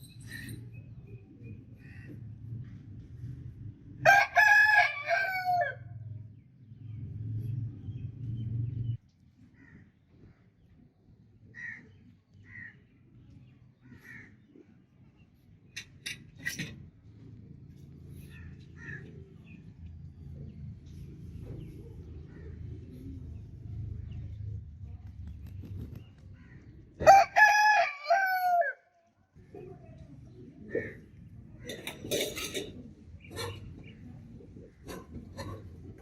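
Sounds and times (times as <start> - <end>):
rooster crowing: 4.0 - 5.9, 27.0 - 28.8.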